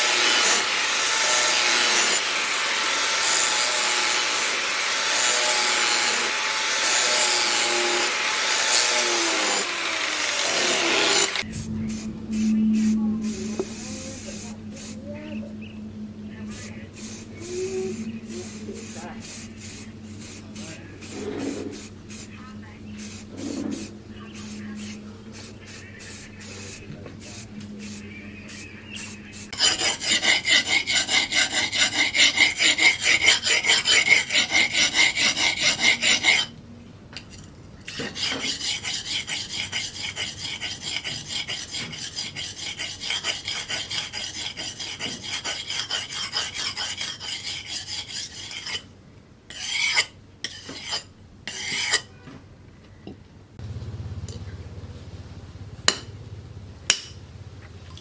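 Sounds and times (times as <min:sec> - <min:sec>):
file scraping steel blade: 0:00.0 - 0:11.5, 0:12.4 - 0:15.0, 0:16.5 - 0:22.3, 0:26.1 - 0:36.5, 0:37.9 - 0:48.9, 0:49.5 - 0:52.2.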